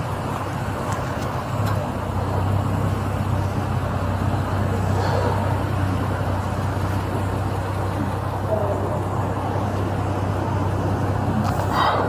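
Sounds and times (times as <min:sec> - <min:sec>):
low engine hum: 0:00.0 - 0:12.0
roadway traffic noise: 0:00.0 - 0:12.0.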